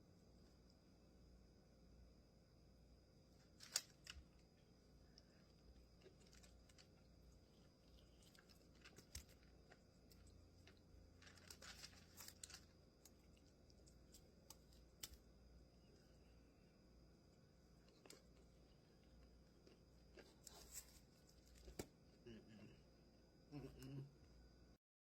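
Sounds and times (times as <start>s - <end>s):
person eating fried chicken crunches: 5.8s - 15.3s, 17.8s - 21.9s.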